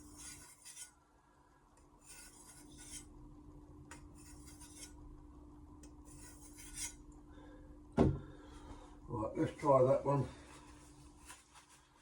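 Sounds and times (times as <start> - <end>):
knife edge scraping hard surface: 0.0 - 1.0, 2.0 - 3.1, 3.9 - 5.0, 6.1 - 7.0.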